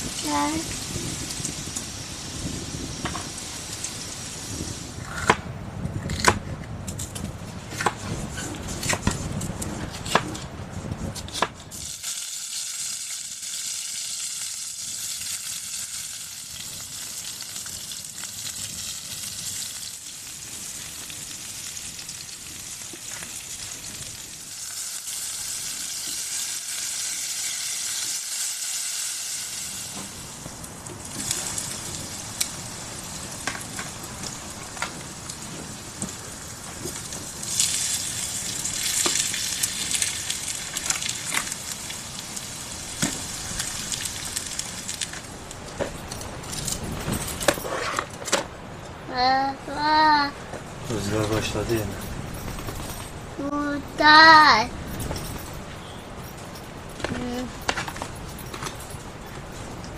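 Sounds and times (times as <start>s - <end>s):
food sizzling in a pan: 11.8s - 30.4s.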